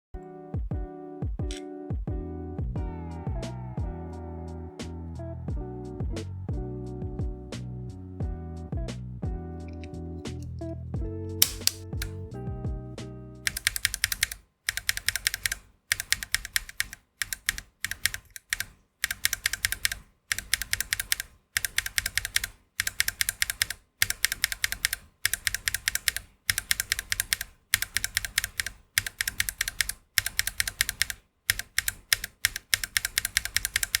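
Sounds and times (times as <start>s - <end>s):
fast typing on mechanical keyboard: 13.5s - 34.0s.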